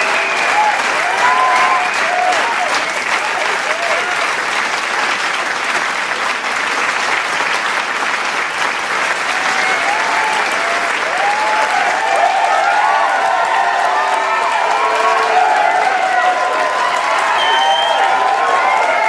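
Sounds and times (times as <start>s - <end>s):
cheers and whoops: 0.0s - 4.3s, 9.2s - 19.0s
crowd applauding: 0.0s - 19.0s.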